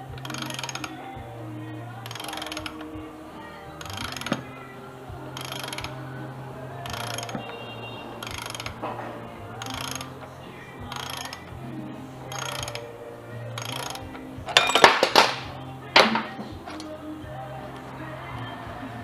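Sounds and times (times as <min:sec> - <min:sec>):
quiet background music: 0:00.0 - 0:19.0
ratchet wrench clicking: 0:00.2 - 0:00.9, 0:02.0 - 0:02.8, 0:03.8 - 0:04.4, 0:05.4 - 0:05.9, 0:08.2 - 0:08.8, 0:09.6 - 0:10.1, 0:10.9 - 0:11.4, 0:12.3 - 0:12.8, 0:13.6 - 0:15.3.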